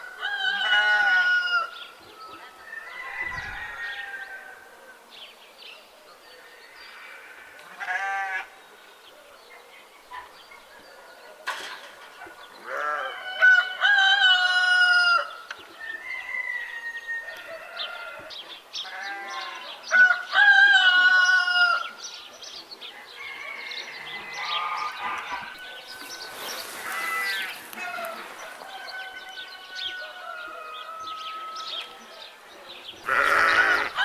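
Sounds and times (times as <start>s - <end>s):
rooster crowing: 0.0s - 1.8s, 2.6s - 4.6s, 13.0s - 18.3s, 23.0s - 32.0s, 33.1s - 34.0s
chickens calling: 22.7s - 34.0s.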